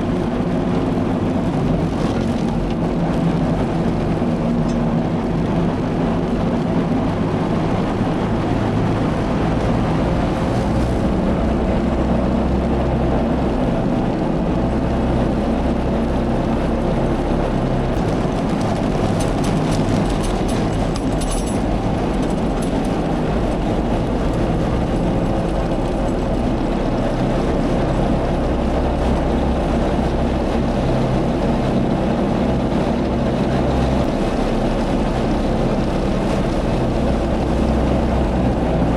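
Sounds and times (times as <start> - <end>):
farm engine running: 0.0 - 38.9
light clicking and rattling: 18.0 - 23.1.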